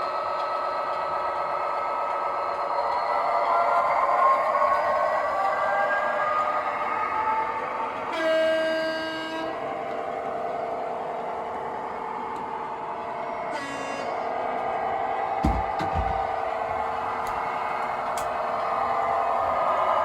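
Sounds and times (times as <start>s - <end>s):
model locomotive engine drone: 0.0s - 20.0s
locomotive horn blast: 8.0s - 9.7s, 13.5s - 14.3s.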